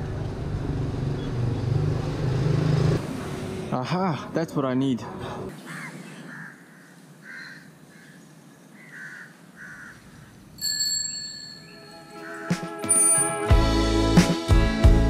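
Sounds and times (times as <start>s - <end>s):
crows cawing: 5.5s - 10.4s
bicycle bell ring: 10.6s - 12.1s, 12.9s - 13.5s.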